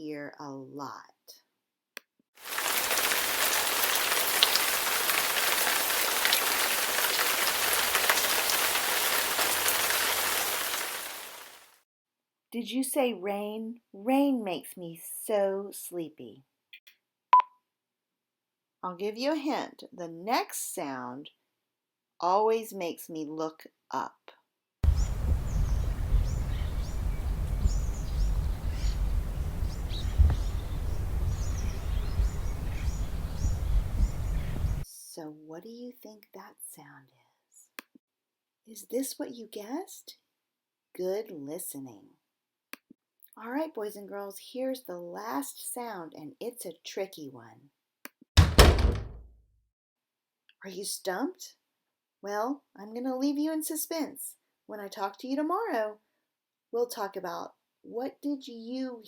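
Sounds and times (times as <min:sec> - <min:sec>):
raindrops ticking: 0:02.4 - 0:11.6, 0:24.8 - 0:34.8
steady rain hiss: 0:02.4 - 0:11.8, 0:24.8 - 0:34.8
small birds chirping: 0:24.8 - 0:34.8
wind rumble on microphone: 0:24.8 - 0:34.8.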